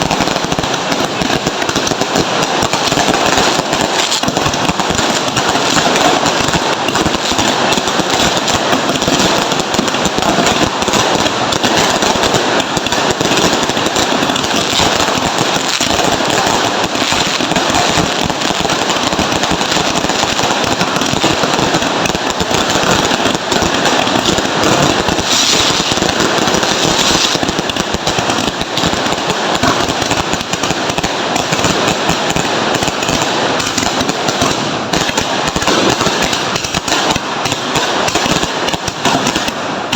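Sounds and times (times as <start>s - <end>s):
firecrackers crackling: 0.0s - 39.9s.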